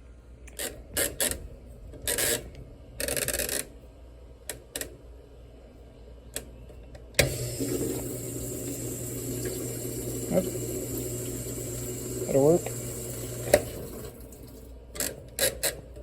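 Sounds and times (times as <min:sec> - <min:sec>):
washer motor low hum: 0:07.2 - 0:16.0.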